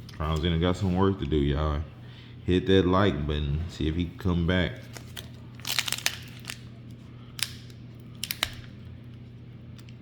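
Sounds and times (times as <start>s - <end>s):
steady low hum: 0.0s - 10.0s
foil pack snips and crinkles: 4.9s - 6.7s, 7.4s - 8.7s.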